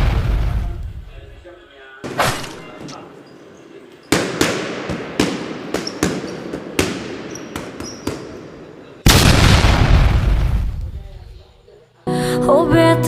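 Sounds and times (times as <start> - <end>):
loud sustained blast: 0.0 - 1.2, 9.1 - 11.0
deep rumble: 0.0 - 1.4
sharp echoing bangs: 0.0 - 2.8, 4.1 - 11.4.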